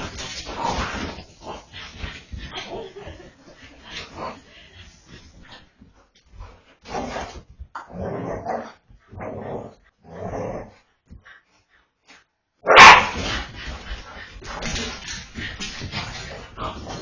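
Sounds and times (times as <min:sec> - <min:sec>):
dog barking and growling: 0:06.9 - 0:10.8, 0:12.6 - 0:13.6.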